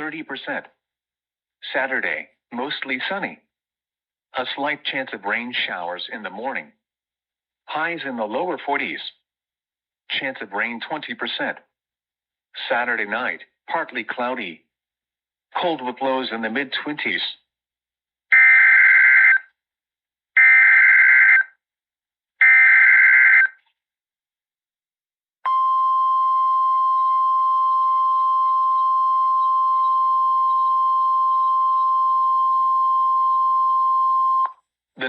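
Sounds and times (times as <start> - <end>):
steady warning alarm tone: 25.5 - 34.5.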